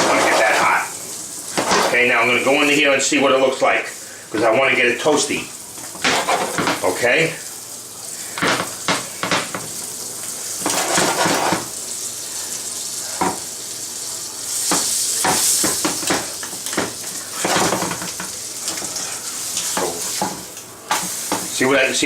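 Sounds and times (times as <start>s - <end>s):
spatula scraping and clinking pan: 0.0s - 0.8s, 6.0s - 6.8s, 10.6s - 11.7s
sandwiches sizzling in frying pan: 0.0s - 22.0s.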